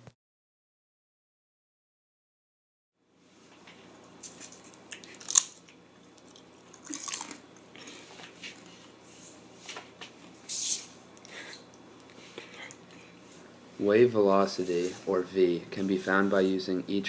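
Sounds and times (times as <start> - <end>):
rustling handling noises: 12.2 - 16.6.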